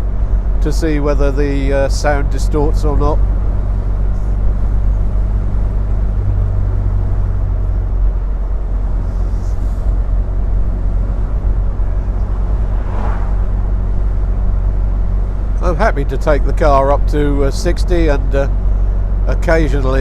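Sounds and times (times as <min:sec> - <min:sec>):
car engine running: 0:00.0 - 0:20.0
road and wind noise: 0:00.0 - 0:20.0.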